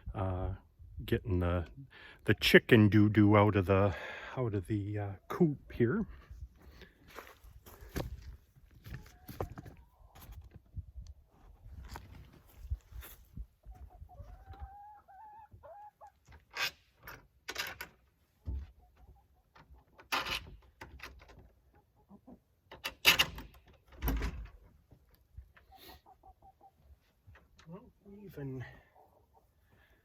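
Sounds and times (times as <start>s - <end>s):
chickens clucking: 8.7s - 10.5s, 13.6s - 16.5s, 18.4s - 20.1s, 21.3s - 22.7s, 24.6s - 30.0s.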